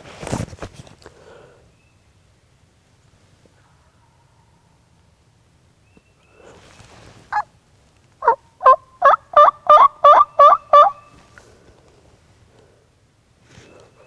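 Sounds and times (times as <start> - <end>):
turkey call yelping: 8.2 - 11.2.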